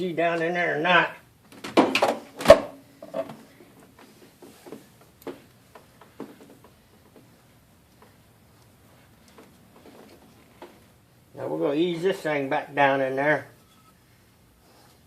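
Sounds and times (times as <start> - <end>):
tool scraping and knocking metal: 2.0 - 3.4.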